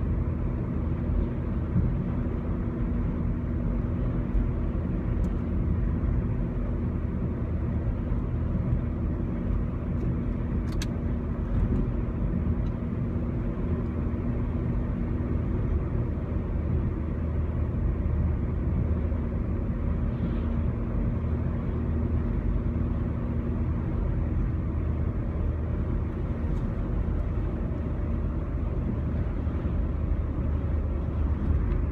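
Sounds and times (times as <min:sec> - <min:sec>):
motor vehicle engine rumble: 0:00.0 - 0:31.9.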